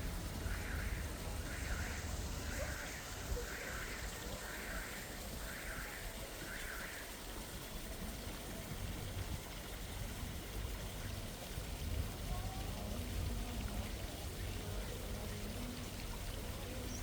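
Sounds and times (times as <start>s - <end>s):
stream water rushing: 0.0s - 17.0s.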